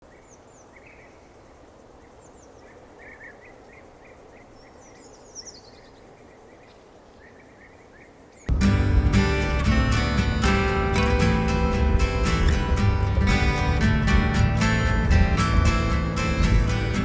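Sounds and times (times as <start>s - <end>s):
small birds chirping: 0.0s - 17.0s
strummed acoustic guitar music: 8.5s - 17.0s.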